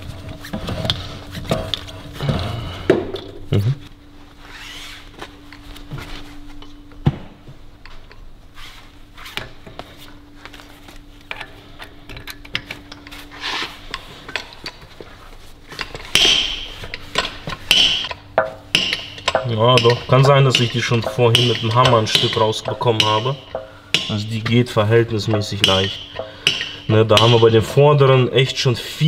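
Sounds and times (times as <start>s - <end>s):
faint steady hum: 0.0s - 29.0s
loud metallic clanks: 15.8s - 27.6s.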